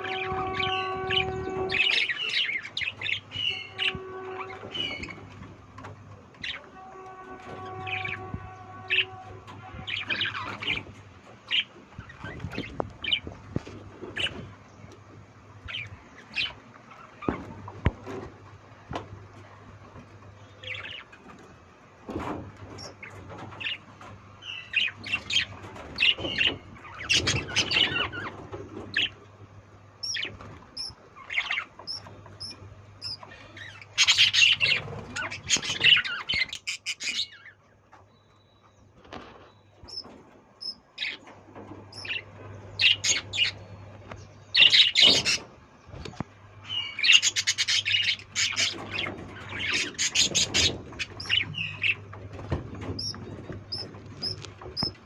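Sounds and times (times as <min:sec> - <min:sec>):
lovebirds chirping and squawking: 0:00.0 - 0:55.0.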